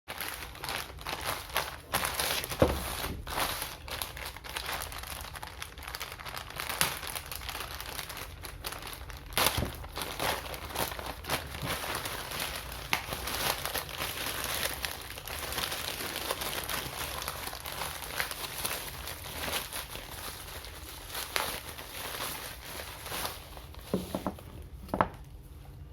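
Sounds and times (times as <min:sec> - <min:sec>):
packaging wrap crinkling: 0:00.1 - 0:24.9.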